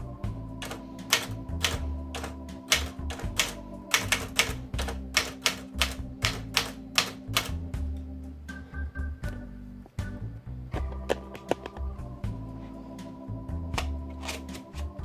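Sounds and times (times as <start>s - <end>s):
manual typewriter key strikes: 0.6s - 7.6s.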